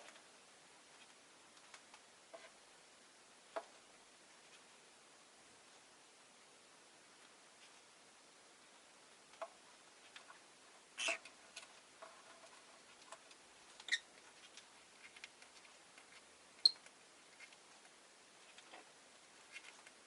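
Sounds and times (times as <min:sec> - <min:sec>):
lovebird chirp: 0:13.8 - 0:14.1.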